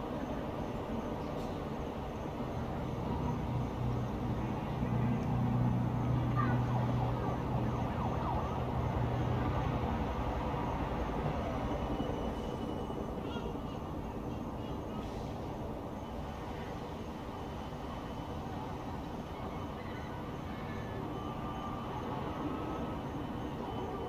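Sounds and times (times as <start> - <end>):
distant siren: 5.8 - 13.2, 16.6 - 24.0.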